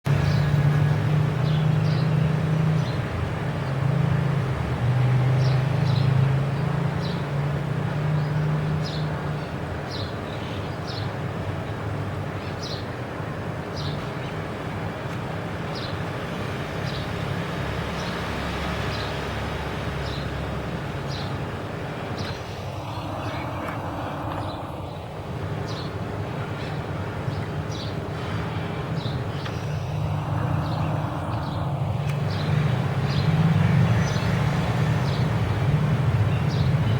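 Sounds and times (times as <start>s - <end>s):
distant traffic hum: 0.0s - 36.9s
rush of noise: 20.7s - 35.4s.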